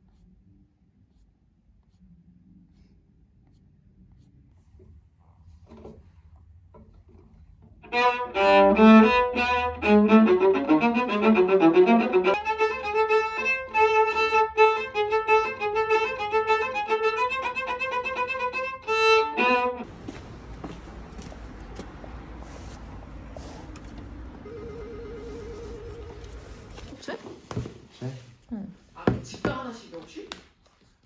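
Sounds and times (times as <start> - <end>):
violin melody: 7.8 - 19.9, 24.4 - 26.8.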